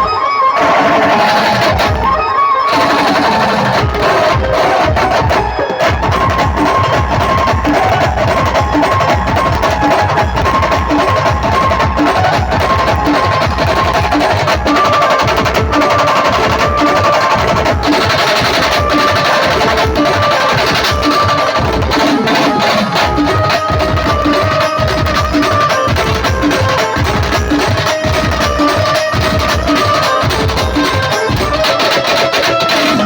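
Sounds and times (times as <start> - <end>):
fast drumming: 0.0 - 33.0
repeating melody line: 9.0 - 33.0.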